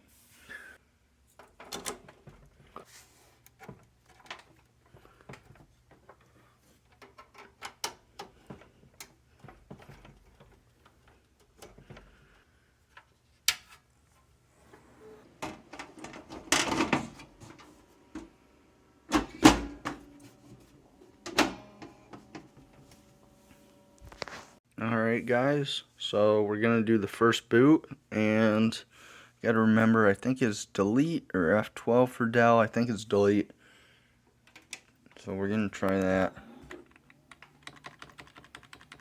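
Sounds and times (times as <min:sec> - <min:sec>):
computer hardware clicking and rattling: 0:03.5 - 0:12.2, 0:36.6 - 0:39.0.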